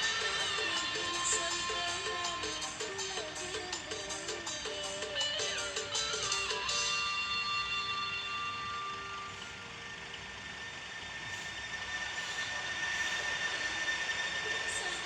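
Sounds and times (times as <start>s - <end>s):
multi-tone bus air horn chord: 0.0s - 10.2s
thin high tone: 0.0s - 15.0s
engine and road noise: 1.9s - 15.0s.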